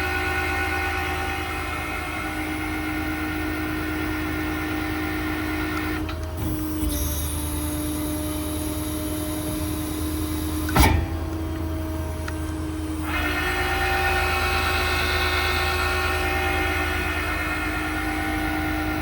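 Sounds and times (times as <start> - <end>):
diesel engine running under load: 0.0 - 19.0
hydraulic crane whining: 0.0 - 19.0
sharp metallic clunk: 10.7 - 11.5.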